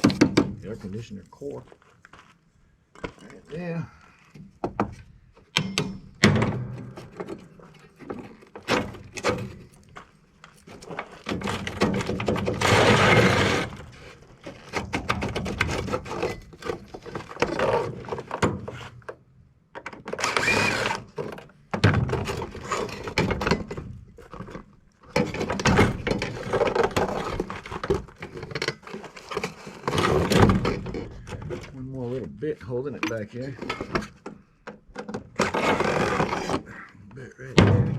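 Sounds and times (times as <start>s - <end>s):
metal and plastic knocking and scraping: 0.0s - 0.7s, 4.3s - 9.7s, 10.7s - 36.7s
short squeal: 20.2s - 21.0s.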